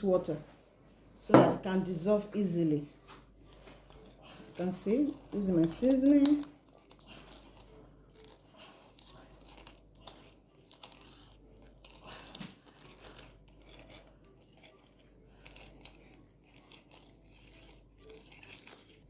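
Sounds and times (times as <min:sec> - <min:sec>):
kitchen utensils scraping: 0:03.5 - 0:08.3.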